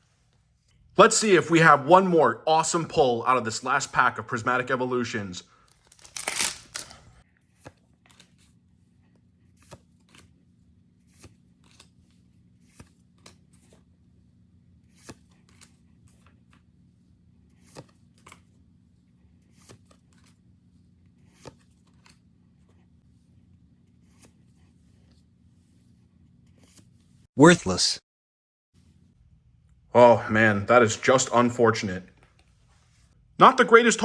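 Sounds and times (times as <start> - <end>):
cards sliding and tapping: 9.5 - 10.4, 11.0 - 13.9, 14.9 - 16.7, 17.5 - 18.6, 19.4 - 20.4, 21.0 - 22.9.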